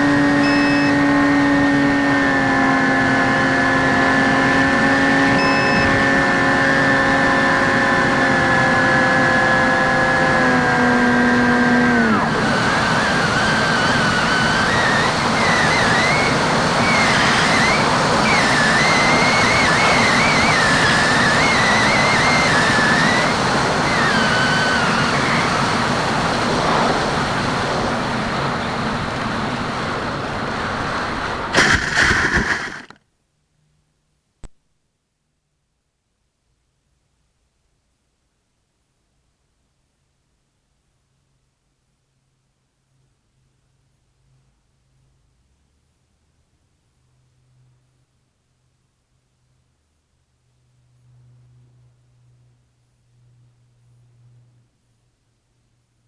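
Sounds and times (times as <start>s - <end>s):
rushing wind with whistle: 0.0s - 2.4s, 4.8s - 7.8s, 12.2s - 32.9s
electric motor and propeller: 0.0s - 28.6s, 30.7s - 33.0s.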